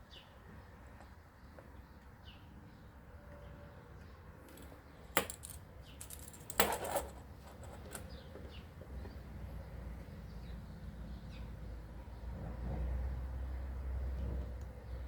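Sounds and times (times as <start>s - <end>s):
metal tools clicking and clinking: 4.5s - 8.2s.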